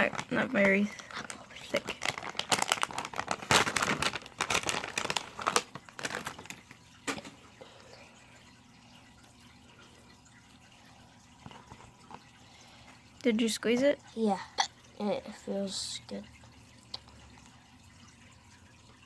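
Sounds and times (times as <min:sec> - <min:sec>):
plastic packaging crinkling: 0:00.0 - 0:07.4.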